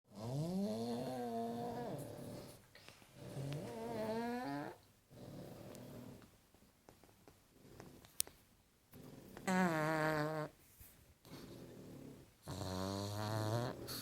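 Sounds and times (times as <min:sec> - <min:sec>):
dog snoring: 0:00.1 - 0:06.3, 0:08.9 - 0:10.5, 0:11.2 - 0:14.0.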